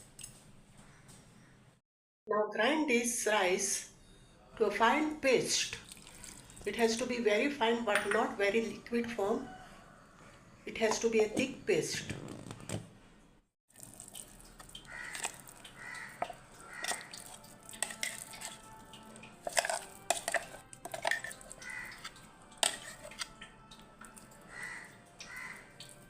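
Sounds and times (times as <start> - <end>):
kitchen utensils and dishes clinking: 7.9 - 8.4, 14.3 - 24.5
crows cawing: 14.8 - 17.3, 21.5 - 22.1, 24.4 - 26.0.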